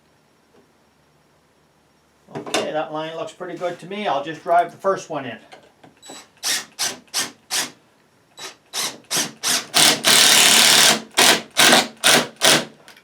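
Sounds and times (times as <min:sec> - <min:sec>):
power screwdriver driving screw into wood: 0:06.0 - 0:07.8, 0:08.4 - 0:12.7.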